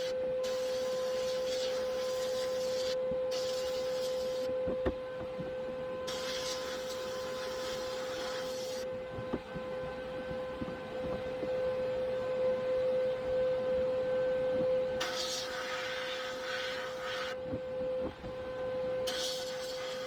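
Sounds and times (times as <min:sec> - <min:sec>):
machine hum: 0:00.0 - 0:20.0
hissing rush of air: 0:15.0 - 0:17.4.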